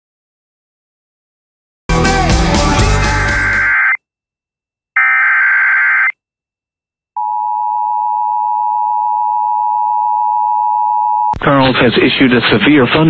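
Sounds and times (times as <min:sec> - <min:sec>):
screeching data header: 0:03.3 - 0:04.0, 0:05.0 - 0:06.1.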